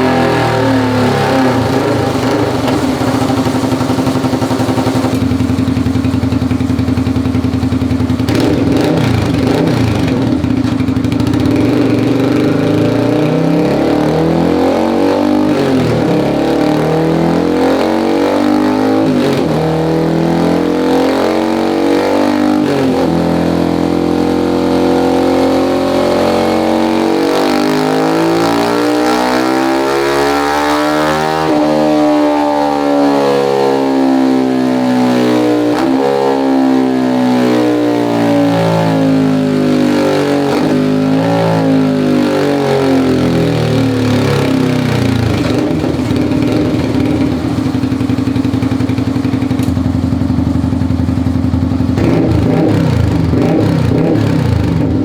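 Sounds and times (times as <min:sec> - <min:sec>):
scooter engine idling and revving: 0:00.0 - 0:55.0.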